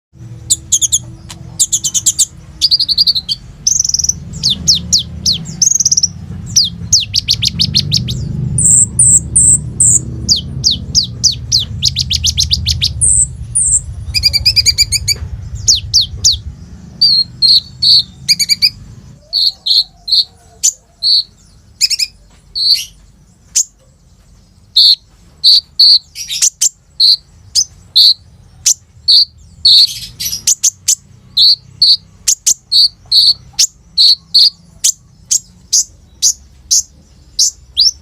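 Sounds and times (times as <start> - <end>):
low rumble: 0.2 - 19.4
bird singing varied chirps and trills: 0.2 - 38.0.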